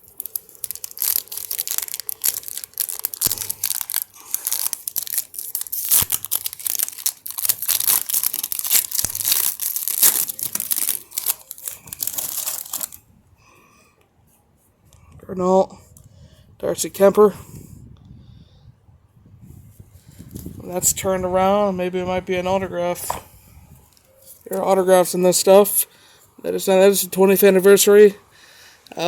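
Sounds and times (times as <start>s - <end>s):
wrapper tearing and crinkling: 0.0s - 13.0s.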